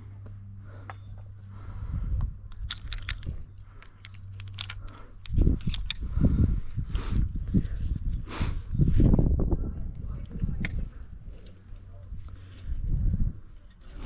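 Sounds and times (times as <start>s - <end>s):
metal climbing hardware clinking: 2.5s - 6.2s.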